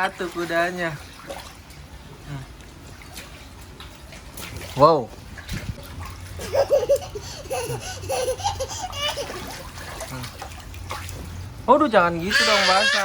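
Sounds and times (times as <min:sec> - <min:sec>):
water splashing in a pool: 0:00.0 - 0:13.0
young child giggling: 0:06.4 - 0:09.6.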